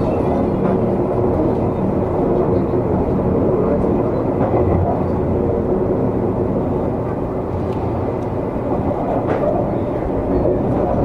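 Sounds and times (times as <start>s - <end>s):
train rumbling along tracks: 0.0s - 11.0s.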